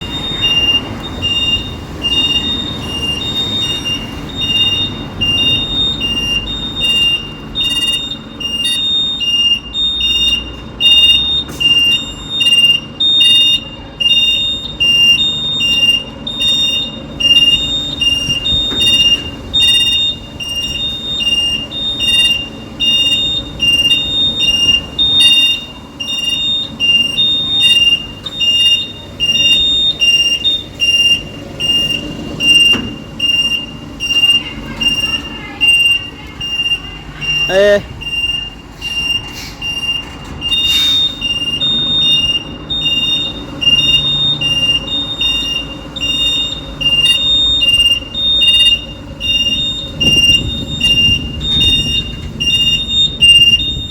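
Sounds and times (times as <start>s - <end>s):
truck engine rumbling: 0.0s - 53.9s
truck reverse alarm beeping: 0.0s - 53.9s.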